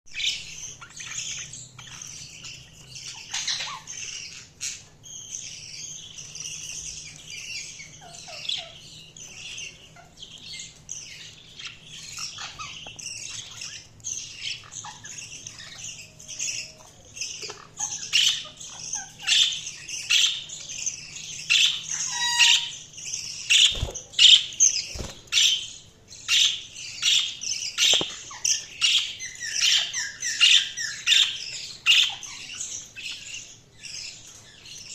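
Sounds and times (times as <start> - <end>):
budgerigars chirping and warbling: 0.1 - 34.9
bird squawks: 0.2 - 4.9, 21.4 - 25.7.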